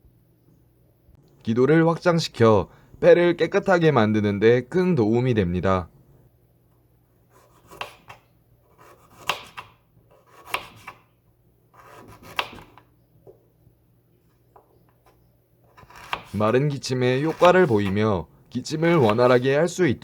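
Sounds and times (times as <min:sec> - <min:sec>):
knife cutting on wooden board: 0:07.3 - 0:11.1, 0:11.7 - 0:12.8, 0:15.0 - 0:18.1, 0:18.7 - 0:19.5.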